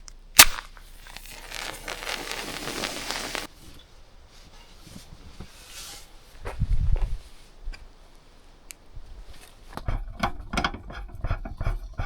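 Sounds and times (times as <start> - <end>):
crinkling and rustling: 0.6 - 7.4.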